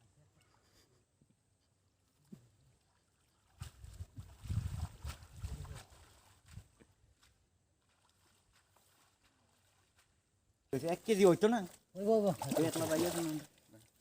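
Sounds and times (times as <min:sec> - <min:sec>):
water splashing: 0:02.3 - 0:06.8, 0:10.9 - 0:14.0.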